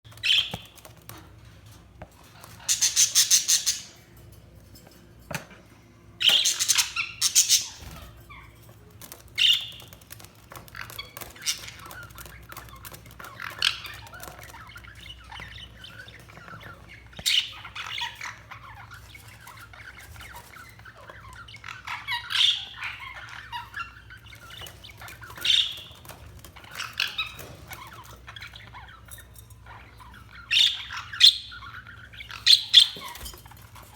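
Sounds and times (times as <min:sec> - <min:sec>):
budgerigars chirping and squawking: 0:00.1 - 0:05.6, 0:06.2 - 0:33.9.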